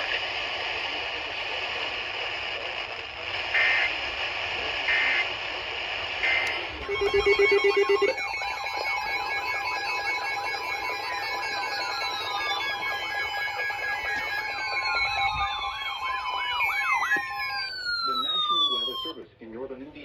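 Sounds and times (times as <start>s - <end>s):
radio static: 0.0s - 19.2s
electronic data bursts: 3.5s - 4.0s, 4.8s - 5.4s, 6.1s - 19.1s
fast-pulsing electronic tone: 6.3s - 19.2s
warbling electronic tone: 6.8s - 19.2s.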